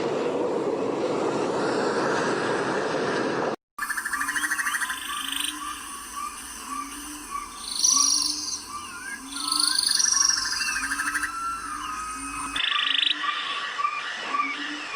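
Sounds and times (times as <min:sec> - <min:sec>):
buzzing trills: 0:03.8 - 0:12.6
birds chirping and whistling: 0:03.8 - 0:14.9
frogs croaking: 0:03.8 - 0:14.9.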